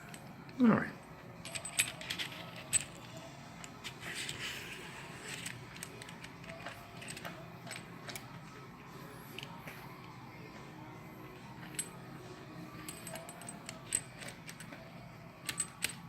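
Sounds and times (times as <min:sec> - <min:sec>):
small metal parts clinking: 0:01.4 - 0:04.4, 0:05.0 - 0:08.3, 0:11.5 - 0:12.1, 0:12.7 - 0:14.8, 0:15.4 - 0:16.0.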